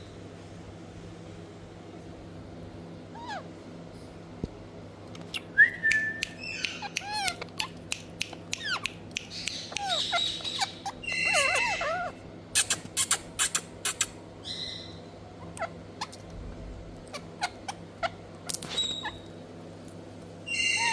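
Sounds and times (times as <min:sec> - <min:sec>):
parakeets chirping and squawking: 0:06.4 - 0:07.7, 0:08.6 - 0:16.2, 0:17.1 - 0:19.3, 0:20.5 - 0:20.9.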